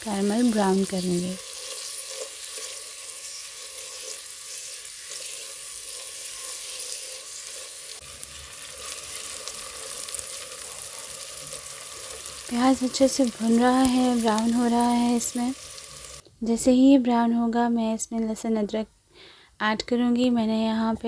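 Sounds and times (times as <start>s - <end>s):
onion sizzling in hot fat: 0.0s - 16.2s.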